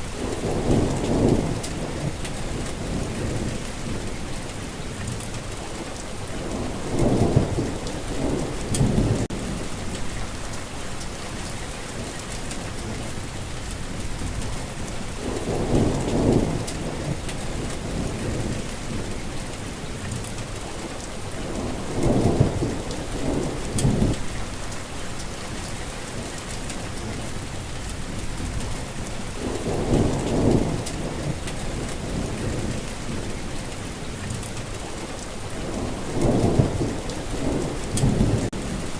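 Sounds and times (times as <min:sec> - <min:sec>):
thunder rumbling: 0:00.0 - 0:04.2, 0:06.2 - 0:10.5, 0:13.8 - 0:19.3, 0:21.3 - 0:24.8, 0:28.0 - 0:33.6, 0:35.4 - 0:38.9
heavy rain falling: 0:00.0 - 0:38.9.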